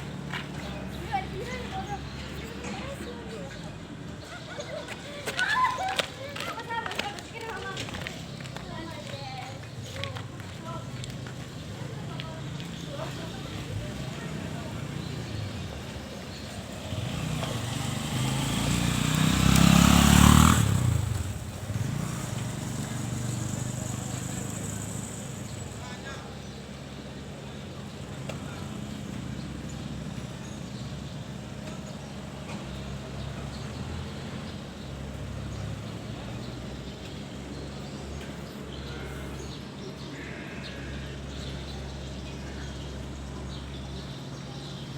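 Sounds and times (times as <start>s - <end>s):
vehicle engine passing by: 10.7s - 26.3s.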